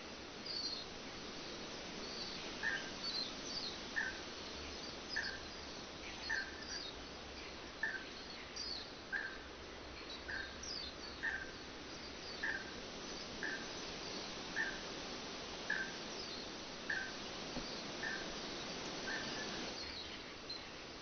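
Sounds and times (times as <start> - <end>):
background hiss: 0.0 - 21.0
birds chirping: 10.0 - 20.8.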